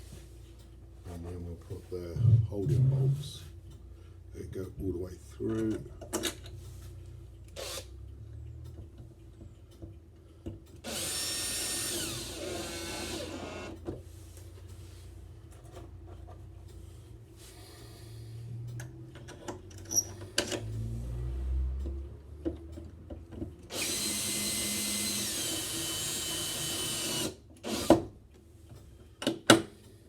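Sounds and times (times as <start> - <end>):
power drill motor whine: 7.6 - 7.8, 10.8 - 13.8, 23.7 - 27.9.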